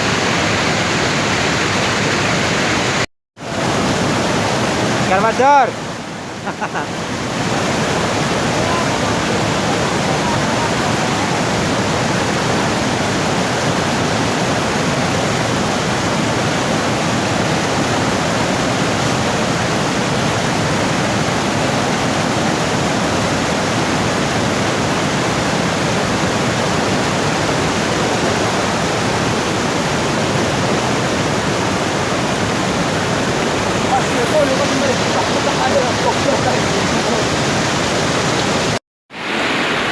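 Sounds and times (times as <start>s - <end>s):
river water rushing over rocks: 0.0s - 39.9s.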